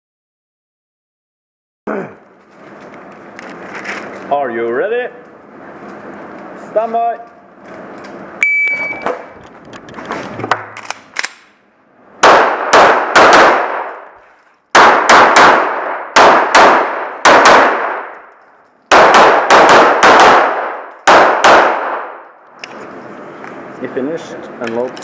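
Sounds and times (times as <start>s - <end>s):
pistol shots with ringing echo: 12.2s - 14.1s, 14.7s - 18.3s, 18.9s - 22.3s.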